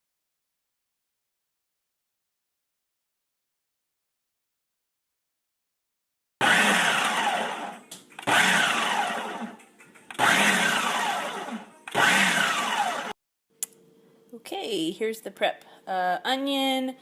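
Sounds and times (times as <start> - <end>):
kitchen appliance motor pulsing: 6.4 - 13.2.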